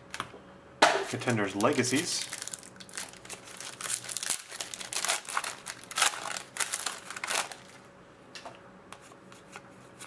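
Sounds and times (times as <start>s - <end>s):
foil wrapper crinkling: 1.1s - 7.9s.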